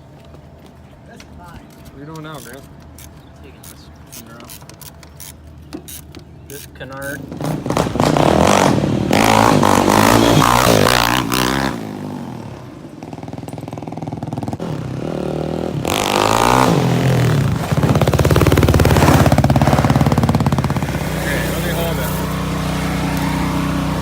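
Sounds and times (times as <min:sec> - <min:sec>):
engine revving: 0:07.0 - 0:24.0.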